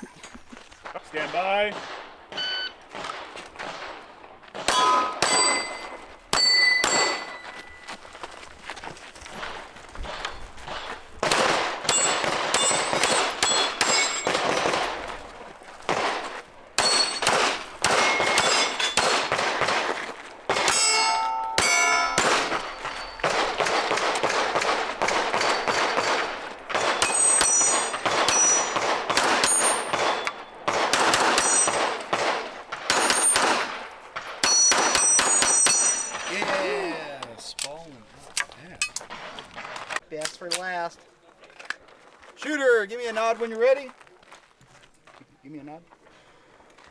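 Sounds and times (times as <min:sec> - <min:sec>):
bullets clanging on steel plates: 0:04.6 - 0:08.2, 0:10.2 - 0:39.6
rapid pistol fire: 0:10.7 - 0:36.6.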